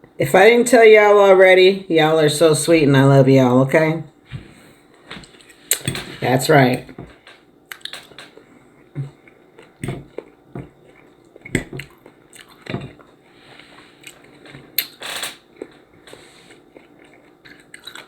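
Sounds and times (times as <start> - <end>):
person chewing food: 7.1 - 18.0.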